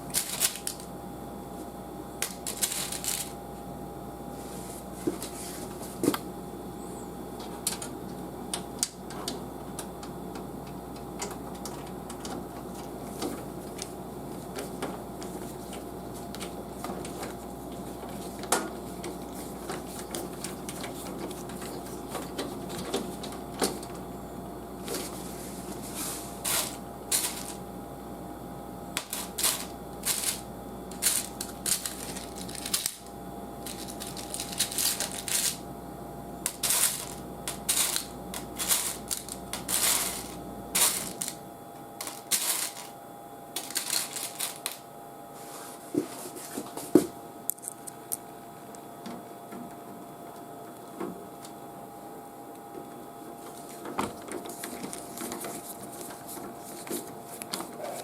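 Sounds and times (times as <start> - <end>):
faint steady hum: 0.0 - 58.0
clicks and scrapes of computer parts: 8.5 - 24.0, 53.4 - 58.0.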